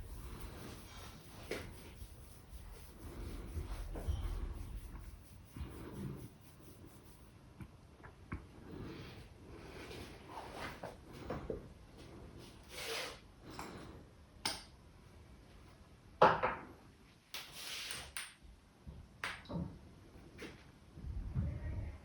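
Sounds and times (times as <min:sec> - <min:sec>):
hands slapping and rubbing skin: 0:00.0 - 0:07.2.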